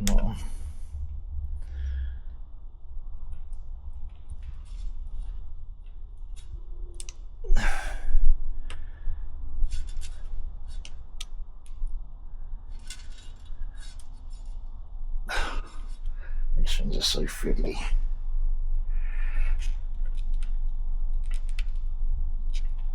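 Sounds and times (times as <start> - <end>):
low steady rumble: 0.0 - 22.9.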